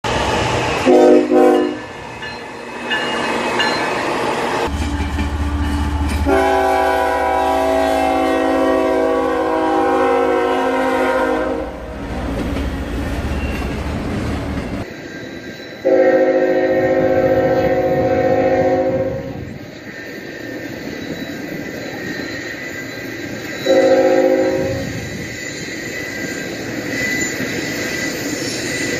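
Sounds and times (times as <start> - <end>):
train rumble: 0.0 - 15.2
locomotive air horn chord: 0.8 - 1.9, 6.2 - 12.0, 15.8 - 19.3, 23.6 - 24.8.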